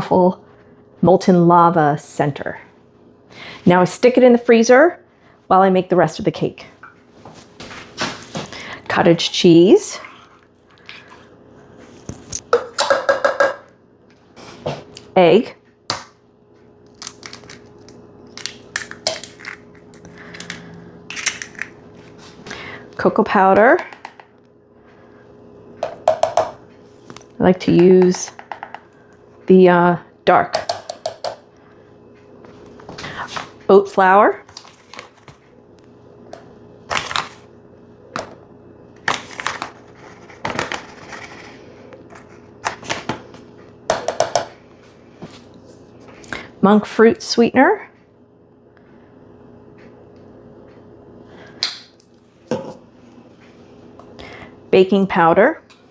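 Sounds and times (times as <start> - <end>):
eggshell cracking: 16.9 - 21.8.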